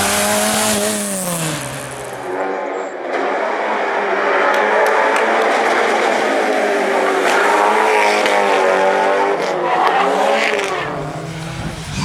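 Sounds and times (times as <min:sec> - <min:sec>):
car engine revving hard: 0:00.0 - 0:02.4, 0:09.9 - 0:12.0.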